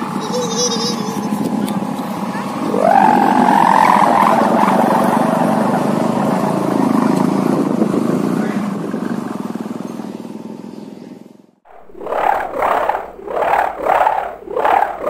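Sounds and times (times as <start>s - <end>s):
kite hummer droning: 0.0s - 15.0s.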